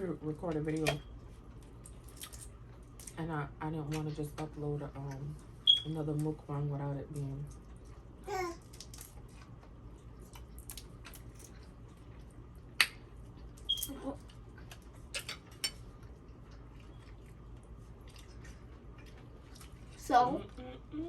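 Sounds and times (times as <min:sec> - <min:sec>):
person chewing: 0:16.0 - 0:20.0.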